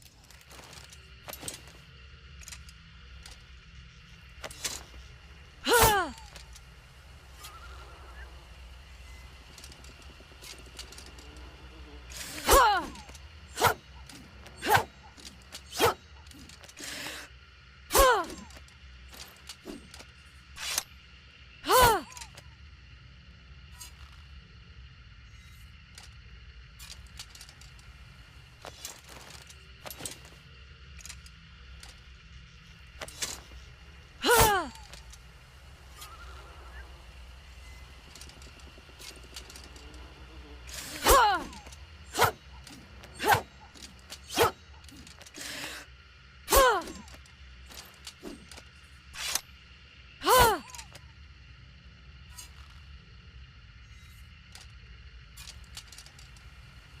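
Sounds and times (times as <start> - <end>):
sword swishing through air: 42.1 - 42.4.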